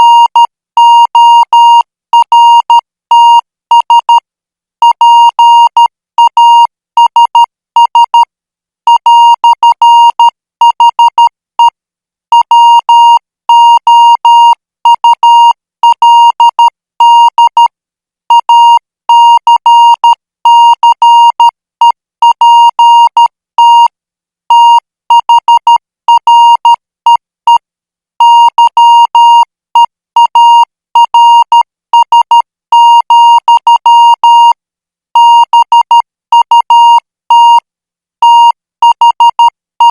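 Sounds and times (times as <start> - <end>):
morse code beeps: 0.0 - 4.2, 12.4 - 17.7, 28.2 - 34.6, 35.2 - 37.6, 38.2 - 39.9.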